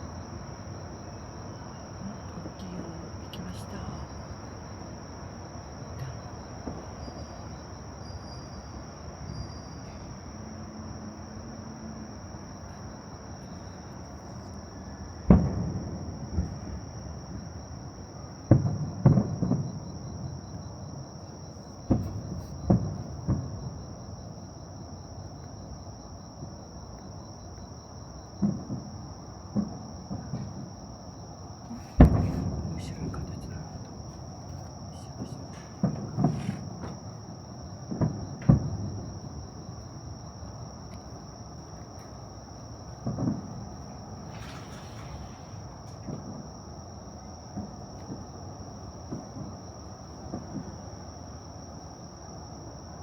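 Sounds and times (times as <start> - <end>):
fireworks bangs with rumbling echo: 5.4 - 10.1, 14.6 - 24.5, 28.3 - 51.2.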